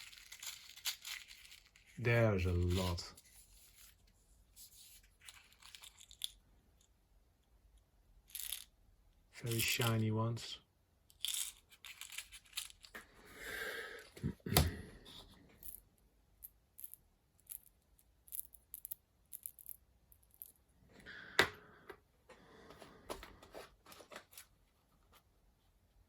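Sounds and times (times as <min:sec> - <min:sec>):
rustling: 0:00.0 - 0:06.4.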